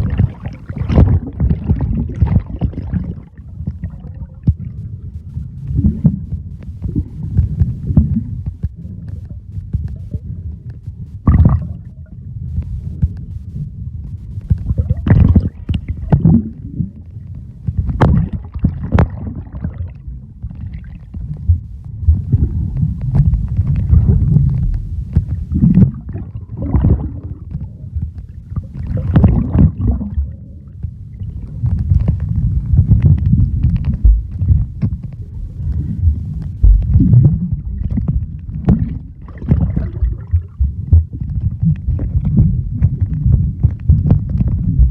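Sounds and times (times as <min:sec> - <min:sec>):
water sloshing and splashing: 0:00.0 - 0:04.8, 0:14.4 - 0:44.9
low rumbling: 0:00.0 - 0:44.9.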